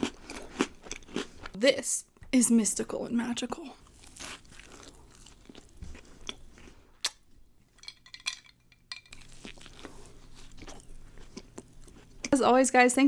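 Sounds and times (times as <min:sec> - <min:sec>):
cookie chewing crunches: 0:00.0 - 0:01.6, 0:03.8 - 0:07.2, 0:09.2 - 0:12.4.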